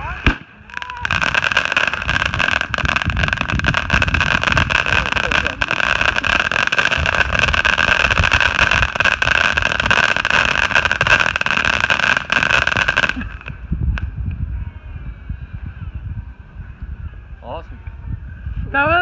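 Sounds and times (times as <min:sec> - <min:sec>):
firework hissing and crackling: 0:00.0 - 0:13.6.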